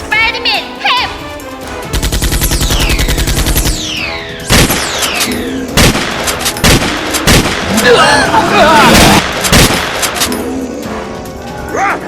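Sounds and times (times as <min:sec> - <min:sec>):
loud single gunshots: 0:04.5 - 0:07.8, 0:08.9 - 0:10.2
automatic gunfire burst: 0:09.0 - 0:10.2.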